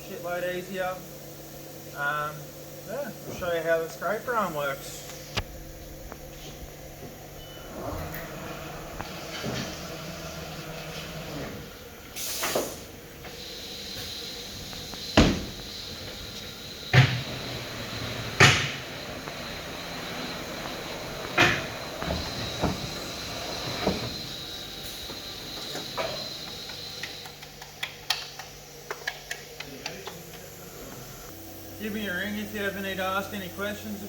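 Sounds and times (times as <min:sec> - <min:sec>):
machine high whine: 0:00.1 - 0:27.6
loud clunks and knocks: 0:15.1 - 0:15.7, 0:16.9 - 0:19.9, 0:20.5 - 0:24.2.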